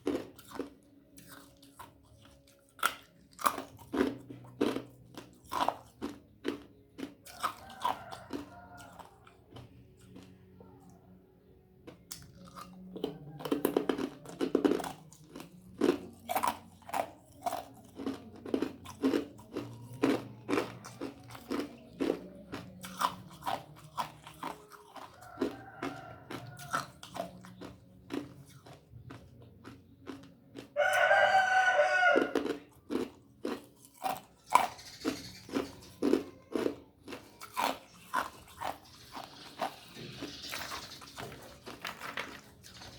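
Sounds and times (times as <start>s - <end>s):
rooster crowing: 7.3s - 9.3s, 25.0s - 27.0s, 30.8s - 32.5s.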